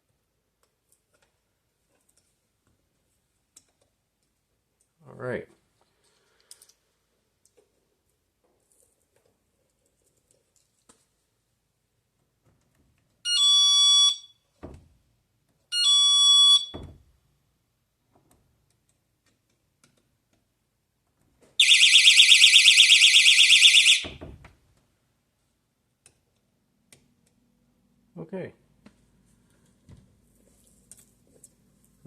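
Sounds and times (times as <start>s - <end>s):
door alarm beeps: 13.3s - 14.4s, 15.7s - 17.0s, 21.6s - 24.4s
shrill pulsing alarm: 21.6s - 24.3s.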